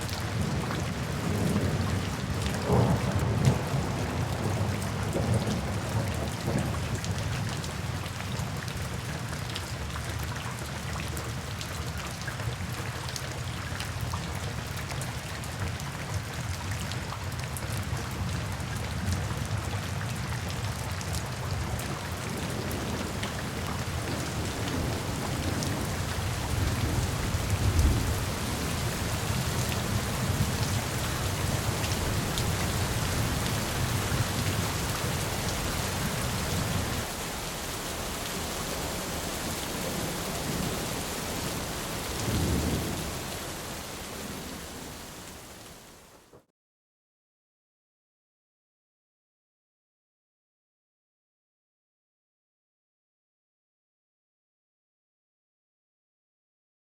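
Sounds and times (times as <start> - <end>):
rain falling: 0.0 - 46.5
thunder rumbling: 0.4 - 6.9, 22.1 - 45.9
thunderclap: 2.6 - 6.8, 24.1 - 34.8, 35.5 - 45.8.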